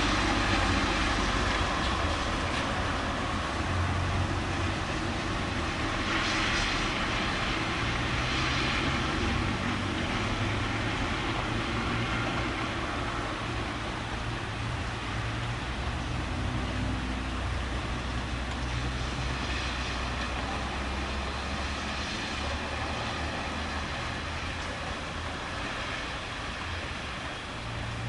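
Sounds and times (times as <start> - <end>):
city road traffic rumble: 0.0 - 28.0
rain hiss: 0.0 - 28.0.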